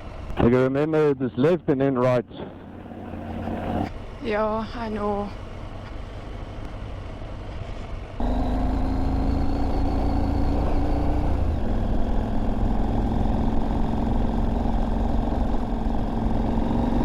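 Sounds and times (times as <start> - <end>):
motorcycle engine running: 8.2 - 17.0.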